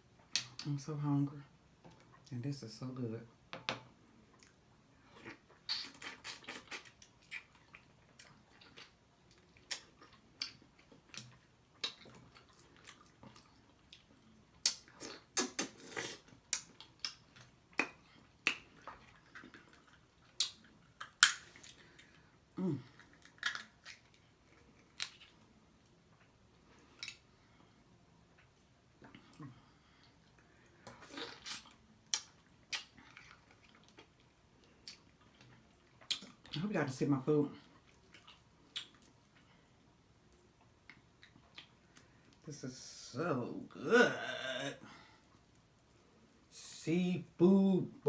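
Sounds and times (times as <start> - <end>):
wet lip smacks and chewing: 5.2 - 22.2, 22.9 - 25.5, 30.2 - 36.6, 37.7 - 39.5, 40.3 - 42.4.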